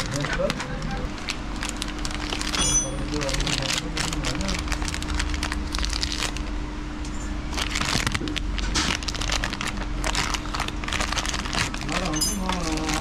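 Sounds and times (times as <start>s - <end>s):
steady low hum: 0.0s - 13.0s
bike parts and tools rattling: 2.4s - 3.4s, 11.9s - 13.0s.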